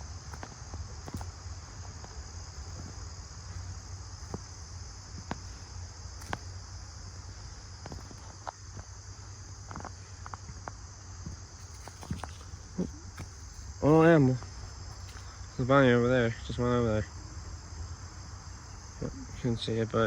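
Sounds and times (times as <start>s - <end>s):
footsteps on rocky ground: 0.0s - 15.4s
insects chorus: 0.0s - 20.0s.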